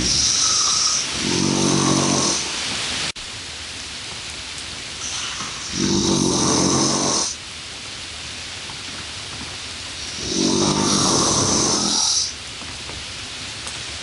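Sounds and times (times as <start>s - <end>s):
person snoring: 0.0s - 2.6s, 5.0s - 7.4s, 10.0s - 12.4s
steady hiss: 0.0s - 14.0s.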